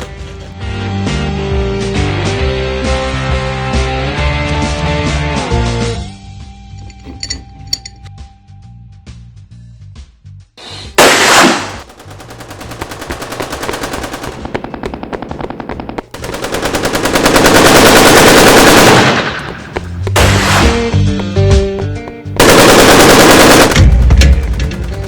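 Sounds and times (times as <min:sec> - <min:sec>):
automatic gunfire: 0:11.0 - 0:20.8, 0:22.4 - 0:25.0.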